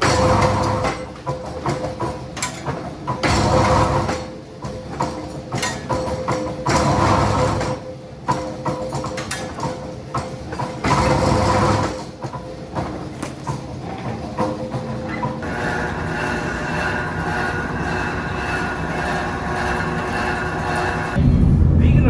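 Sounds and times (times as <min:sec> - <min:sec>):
factory machinery humming: 0:15.4 - 0:22.0
loud noisy machine surge: 0:15.5 - 0:22.0.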